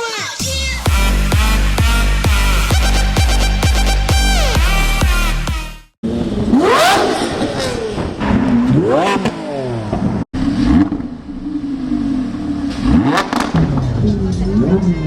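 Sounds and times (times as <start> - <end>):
car engine revving: 0.6 - 15.0.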